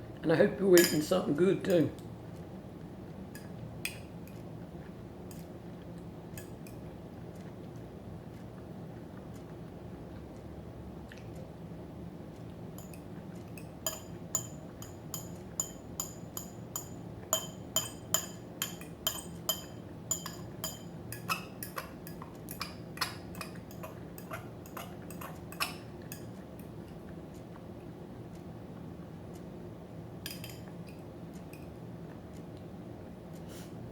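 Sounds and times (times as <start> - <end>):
metal fork clinking against dish: 0.8 - 1.8, 6.4 - 6.8, 12.8 - 26.3, 30.2 - 30.7.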